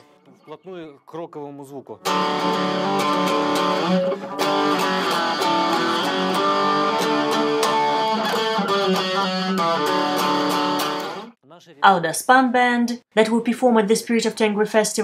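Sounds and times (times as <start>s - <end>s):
electric plucked string riff: 2.0s - 11.3s.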